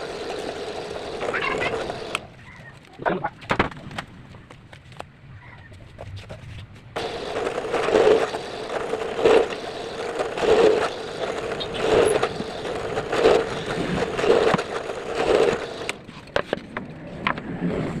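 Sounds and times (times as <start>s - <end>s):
power drill boring into wood: 0.0s - 2.3s, 7.0s - 16.0s.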